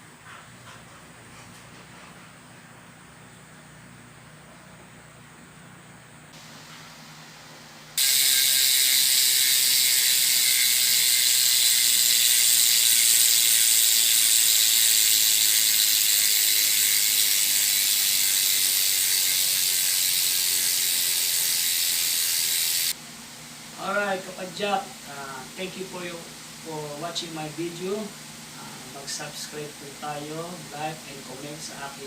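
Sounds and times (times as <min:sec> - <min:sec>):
bicycle freehub clicking: 0:08.0 - 0:23.0.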